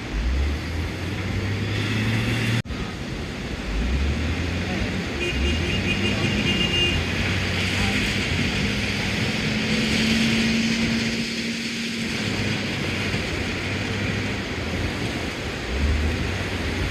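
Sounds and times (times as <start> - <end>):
constant rushing background: 0.0 - 16.9.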